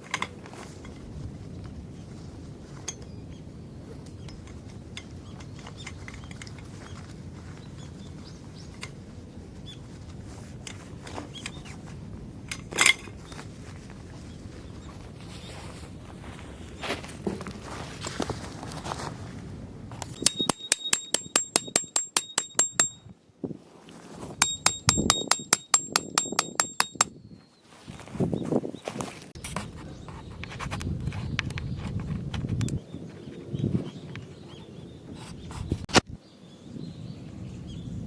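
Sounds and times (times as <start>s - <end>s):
rustling and handling noises: 12.6s - 21.4s, 23.6s - 24.9s, 27.5s - 33.5s.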